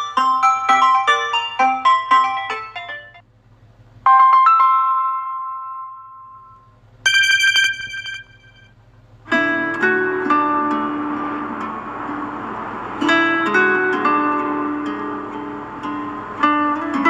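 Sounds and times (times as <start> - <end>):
marimba-like ringtone melody: 0.0 - 3.2, 4.1 - 8.7
short chime: 5.8 - 8.7
tinkling run of quick notes: 6.2 - 8.7.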